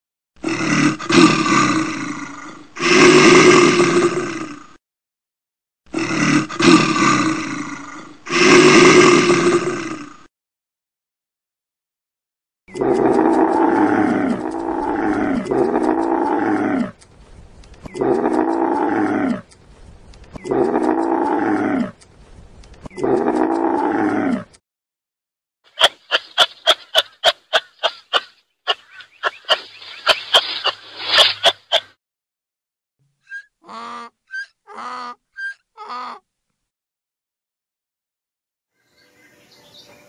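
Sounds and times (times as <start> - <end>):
large animal deep roaring calls: 0.4 - 4.8, 5.9 - 10.3, 12.7 - 17.0, 17.9 - 19.6, 20.4 - 22.0, 22.9 - 24.6
animal short sharp calls: 25.7 - 31.9.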